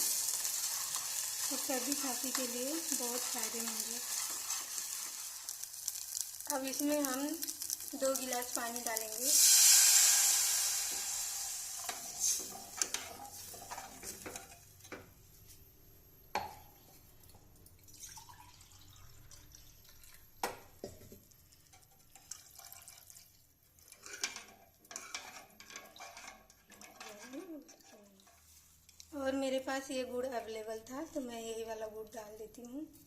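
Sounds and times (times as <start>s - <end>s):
stirring: 0.0s - 9.5s, 21.4s - 29.1s
water hissing in hot oil: 0.0s - 13.0s
water dripping: 17.2s - 20.2s.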